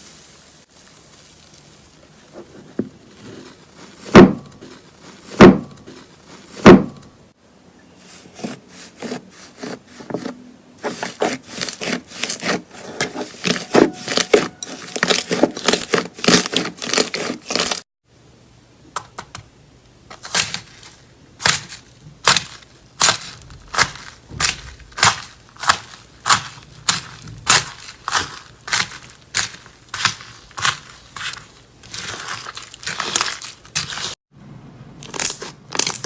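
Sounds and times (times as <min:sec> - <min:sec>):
slime popping and crackling: 0:35.0 - 0:36.0.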